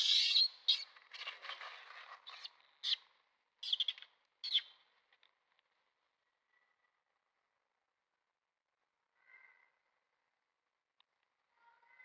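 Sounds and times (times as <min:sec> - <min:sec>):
baby monkey screaming: 0:00.0 - 0:00.8.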